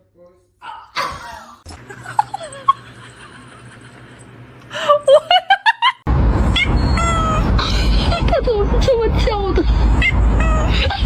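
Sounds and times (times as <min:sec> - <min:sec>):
low steady hum: 0:00.2 - 0:11.0
person laughing: 0:01.0 - 0:06.0
loud rushing noise: 0:06.1 - 0:11.0.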